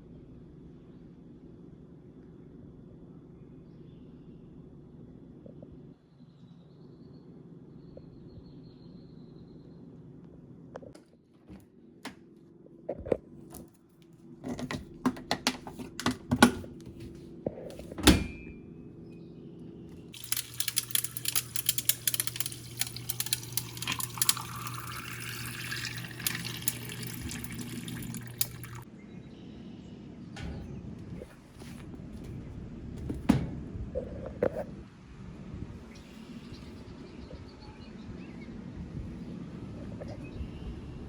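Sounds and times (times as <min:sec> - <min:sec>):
tap water filling container: 0:20.2 - 0:28.8
clicks and knocks: 0:30.4 - 0:33.8.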